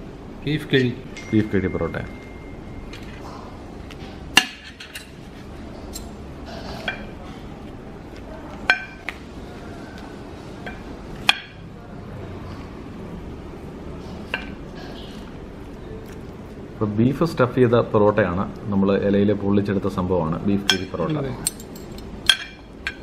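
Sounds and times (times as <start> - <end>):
low background noise: 0.0 - 23.0
cutlery clinking against plates: 4.0 - 5.2, 5.8 - 7.2, 20.7 - 23.0.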